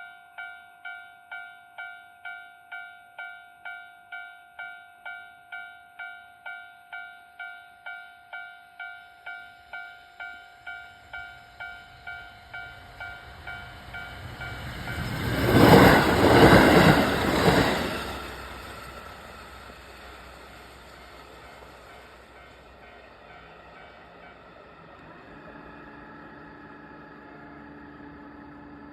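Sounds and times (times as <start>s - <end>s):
diesel train passing: 8.3s - 28.9s.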